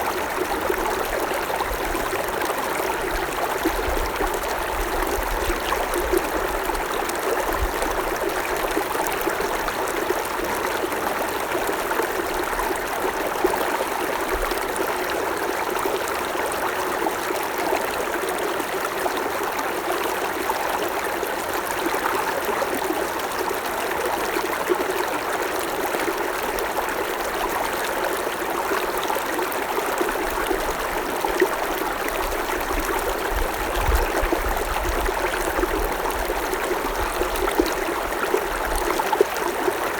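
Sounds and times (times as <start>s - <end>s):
creek water babbling over stones: 0.0s - 39.9s.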